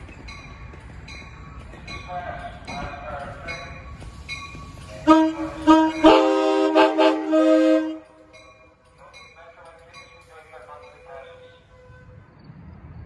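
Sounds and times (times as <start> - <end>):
train air horn chord: 5.1 - 8.1.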